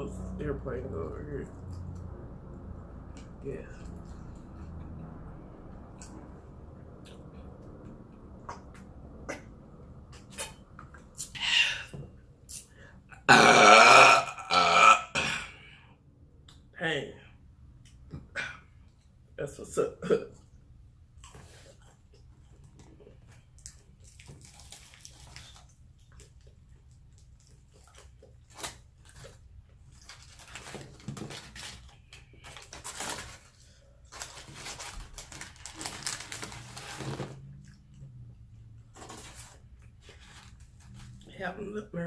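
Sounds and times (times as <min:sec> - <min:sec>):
person chewing food: 0:21.2 - 0:30.1.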